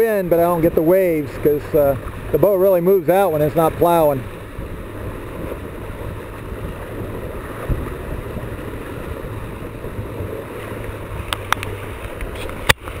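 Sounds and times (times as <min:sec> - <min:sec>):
water rushing along hull: 0:00.0 - 0:13.0
wind buffeting microphone: 0:00.0 - 0:13.0.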